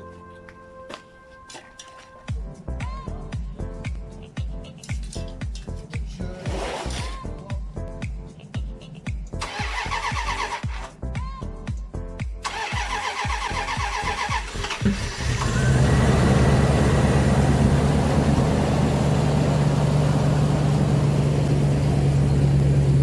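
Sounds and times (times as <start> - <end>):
engine cranking and idling: 9.4 - 10.9, 12.4 - 23.0.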